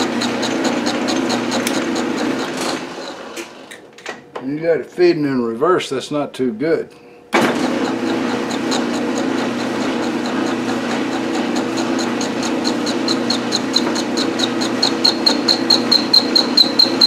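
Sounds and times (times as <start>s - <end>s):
lathe machine hum: 0.0s - 3.8s, 7.4s - 17.0s
high-pitched ticking: 14.8s - 17.0s.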